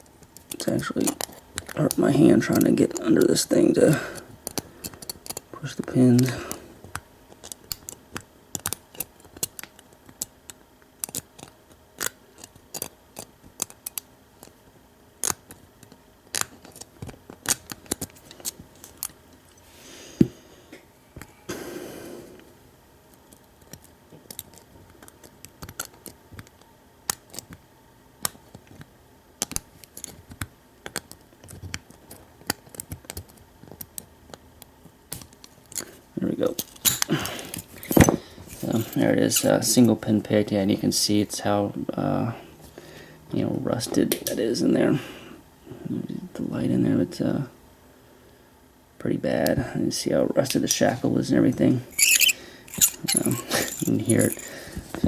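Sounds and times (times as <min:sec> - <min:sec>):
lock pick metallic clicks: 0:52.0 - 0:54.5.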